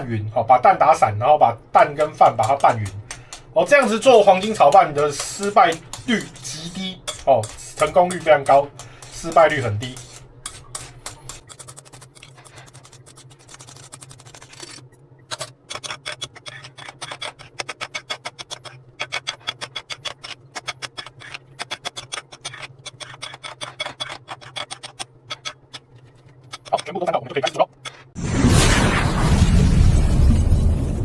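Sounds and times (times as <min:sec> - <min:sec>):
utensil scraping a bowl: 0:01.8 - 0:28.2.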